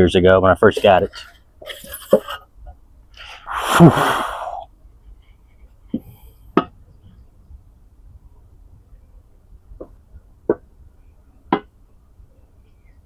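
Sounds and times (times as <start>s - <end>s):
person sighing loudly: 3.4s - 4.7s.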